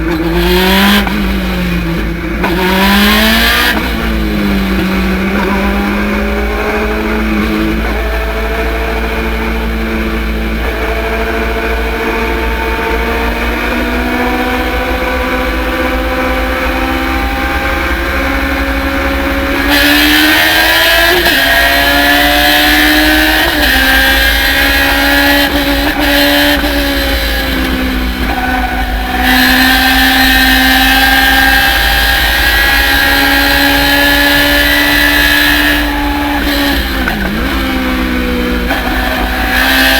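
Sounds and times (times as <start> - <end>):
race car engine at full throttle: 0.0 - 39.9.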